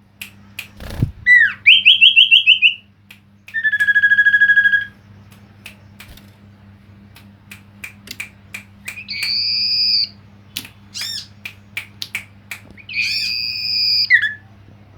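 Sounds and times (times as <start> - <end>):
faint steady hum: 0.0 - 14.9
bird calling with chips and whistles: 0.9 - 2.9, 3.5 - 5.0, 8.8 - 11.4, 12.8 - 14.5.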